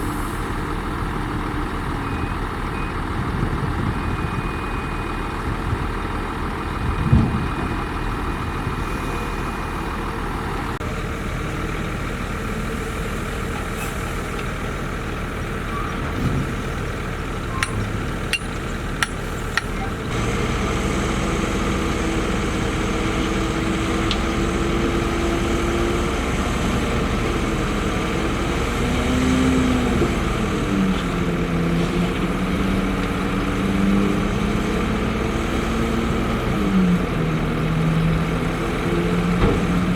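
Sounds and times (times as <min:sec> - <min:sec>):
heavy diesel machinery running: 0:00.0 - 0:39.9
sharp metallic clanks: 0:17.5 - 0:19.8.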